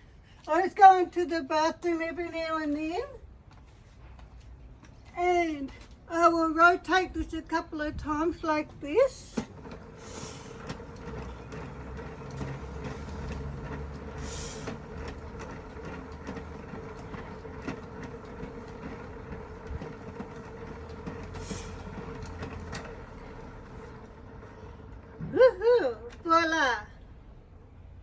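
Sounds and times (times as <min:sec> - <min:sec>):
washing machine drum rumbling: 0:07.8 - 0:26.6.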